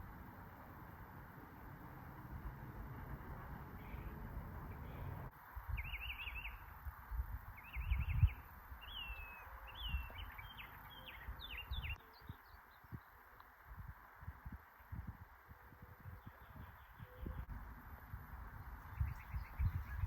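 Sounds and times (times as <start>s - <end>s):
songbird calling: 3.6s - 13.5s, 15.6s - 17.6s, 18.3s - 20.0s.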